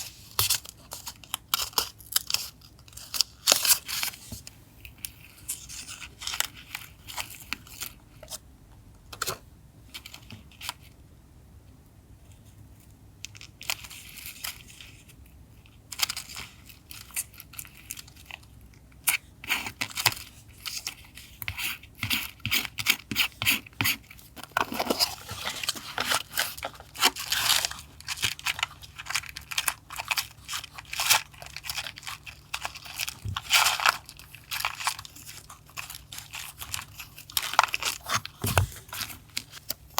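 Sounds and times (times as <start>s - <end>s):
paper rustling and crinkling: 24.1s - 39.9s.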